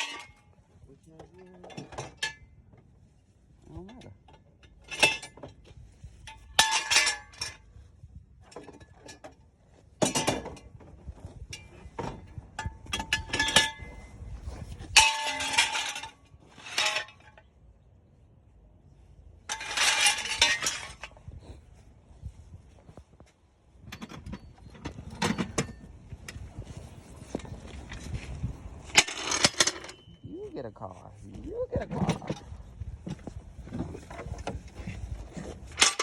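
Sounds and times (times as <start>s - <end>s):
metal tools clanking: 0.0s - 0.5s, 6.2s - 7.6s, 11.5s - 17.4s, 19.5s - 21.2s, 23.8s - 26.8s, 27.4s - 30.7s, 31.8s - 36.0s.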